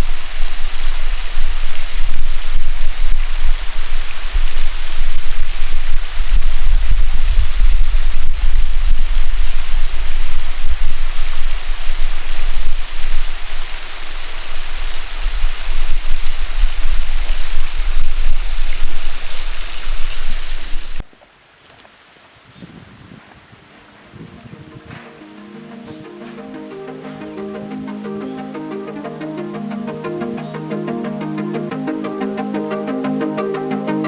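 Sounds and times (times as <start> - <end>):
waterfall rushing: 0.0 - 21.0.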